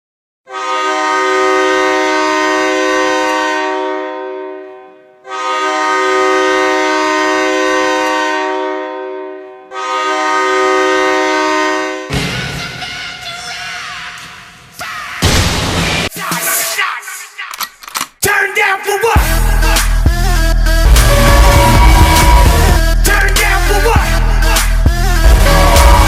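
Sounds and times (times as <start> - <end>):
goal horn blasts: 0.5 - 12.1, 20.9 - 22.8, 25.3 - 26.0
goal song music: 18.3 - 26.0.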